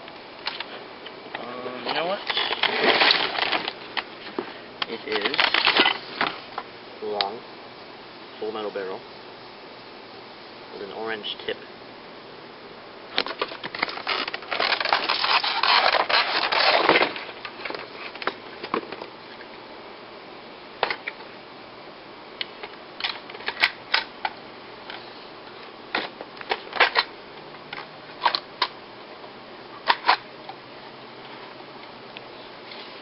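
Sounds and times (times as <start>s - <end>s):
rifle parts rattling: 1.8s - 4.1s, 4.9s - 6.4s, 13.2s - 19.1s, 23.0s - 24.4s, 25.9s - 27.1s, 29.8s - 30.2s.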